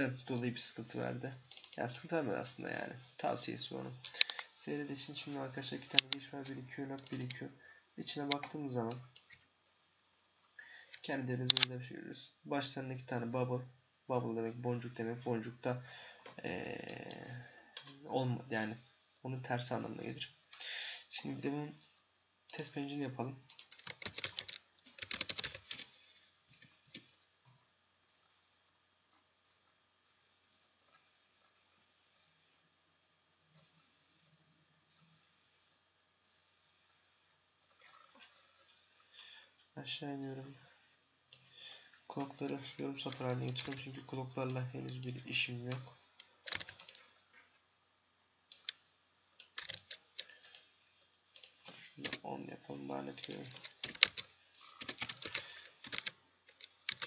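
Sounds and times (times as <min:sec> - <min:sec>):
fast typing on keyboard: 0:23.5 - 0:25.9, 0:42.2 - 0:47.0, 0:49.4 - 0:50.6, 0:51.4 - 0:52.3, 0:53.1 - 0:57.0.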